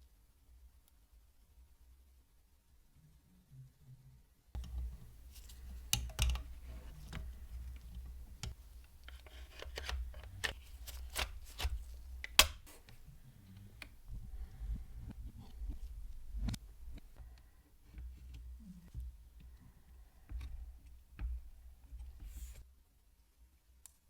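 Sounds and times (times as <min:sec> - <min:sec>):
small parts clicking and tapping: 0:04.6 - 0:14.0.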